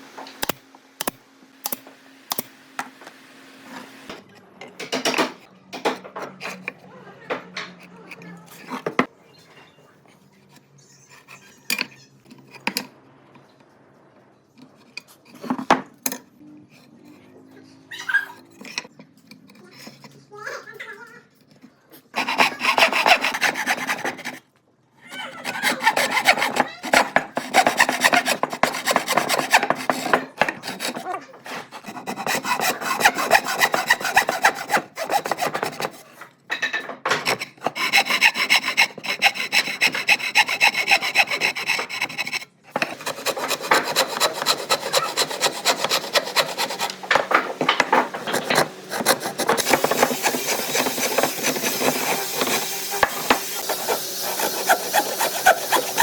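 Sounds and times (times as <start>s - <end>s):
tool rasping wood: 22.1s - 24.4s, 25.2s - 36.2s, 37.1s - 56.0s.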